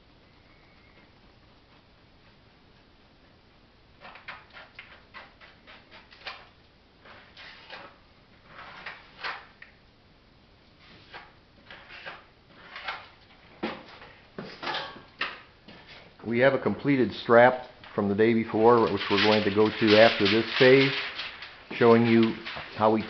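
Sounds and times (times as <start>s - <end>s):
trowel scraping strokes: 4.0s - 9.5s, 10.8s - 13.1s.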